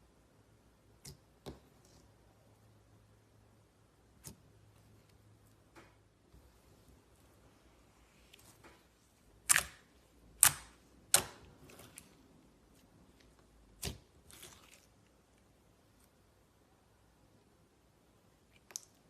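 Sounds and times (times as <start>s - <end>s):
slime squelching: 6.4s - 16.5s
slime smacking: 9.4s - 12.0s.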